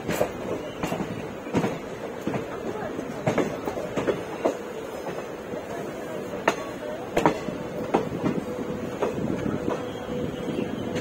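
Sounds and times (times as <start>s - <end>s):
wheels clacking and knocking: 0.0s - 5.3s
train coach rumbling on rails: 0.0s - 11.0s.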